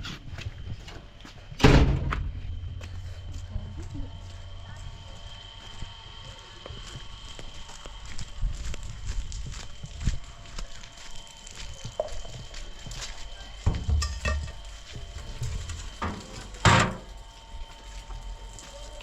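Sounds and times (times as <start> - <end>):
low rumble: 2.0 - 5.5
heavy thump: 13.7 - 14.6
knocks and thuds: 13.7 - 14.6.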